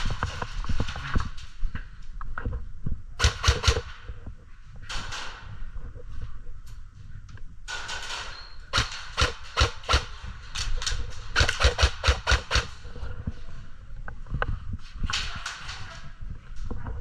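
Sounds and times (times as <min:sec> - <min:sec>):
airsoft gun shots: 0:03.2 - 0:03.9, 0:08.7 - 0:10.1, 0:11.4 - 0:12.7.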